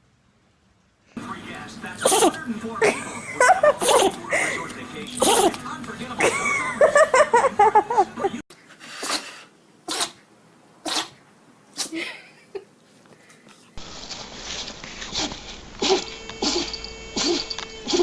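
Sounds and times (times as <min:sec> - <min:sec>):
puppy sneezing: 0:02.0 - 0:02.4, 0:03.7 - 0:04.3, 0:05.2 - 0:05.6, 0:08.9 - 0:12.0, 0:15.1 - 0:18.0.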